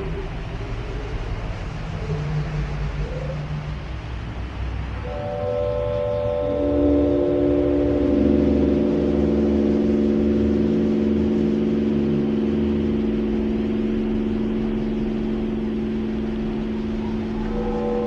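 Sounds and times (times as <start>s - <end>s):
low meditative drone: 0.0s - 18.0s
low rumbling hiss: 0.0s - 18.0s
higher ringing tones: 4.8s - 18.0s.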